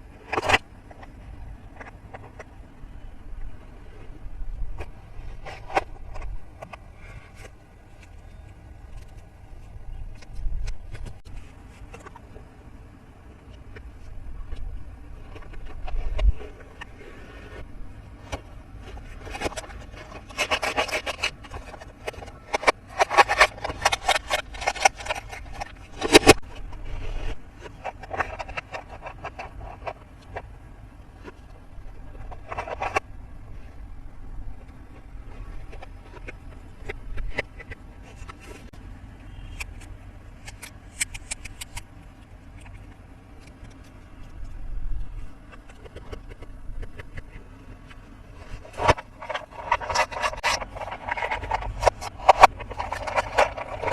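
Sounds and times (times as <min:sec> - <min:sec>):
toy packaging rubbing and scraping: 0:03.8 - 0:12.3, 0:13.5 - 0:30.5, 0:31.1 - 0:33.8, 0:34.5 - 0:39.7, 0:43.5 - 0:53.9
rapid clicking and crackling: 0:18.2 - 0:33.1, 0:39.5 - 0:53.9.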